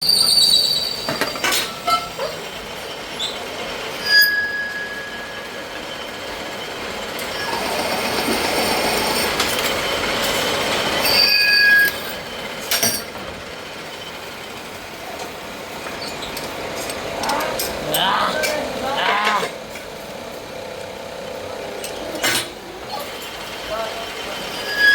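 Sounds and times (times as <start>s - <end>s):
high-pitched tool squeals: 0.0s - 2.1s, 4.0s - 5.6s, 7.3s - 9.4s, 11.0s - 12.1s, 24.4s - 24.9s.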